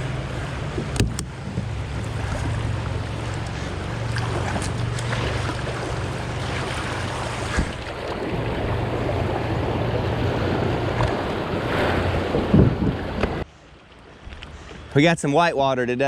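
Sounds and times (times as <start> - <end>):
river water rushing through rapids: 0.0 - 12.3
wind noise on microphone: 0.0 - 13.5.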